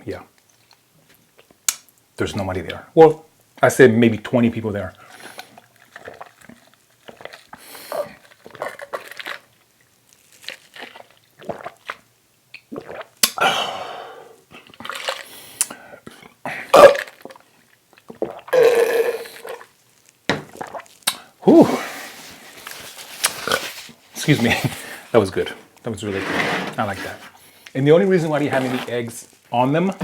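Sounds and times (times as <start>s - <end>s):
chewing and wet mouth sounds: 5.0s - 13.4s, 14.5s - 21.4s
person burping: 16.5s - 17.1s, 18.3s - 19.6s, 21.4s - 21.8s.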